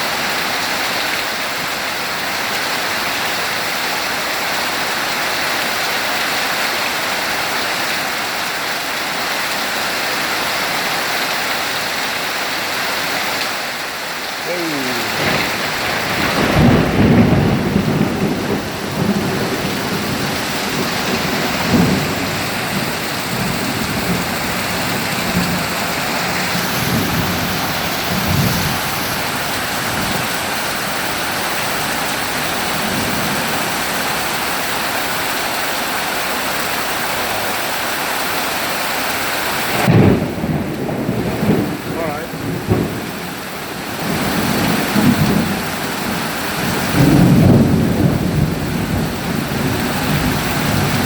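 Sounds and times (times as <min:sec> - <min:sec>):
heavy rain: 0:00.0 - 0:51.0
thunder rumbling: 0:14.5 - 0:34.3, 0:39.7 - 0:51.0.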